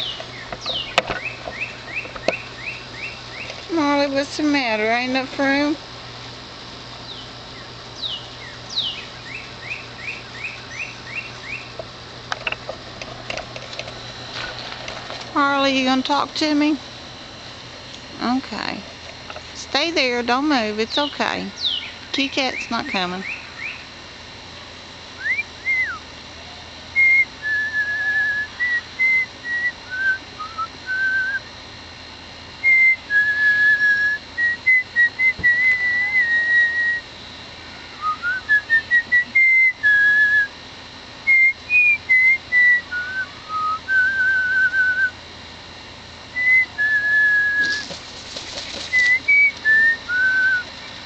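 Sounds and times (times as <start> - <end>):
person whistling a slow tune: 25.2 - 26.0, 27.0 - 31.5, 32.6 - 37.0, 38.0 - 40.5, 41.3 - 45.2, 46.4 - 47.8, 49.0 - 50.7.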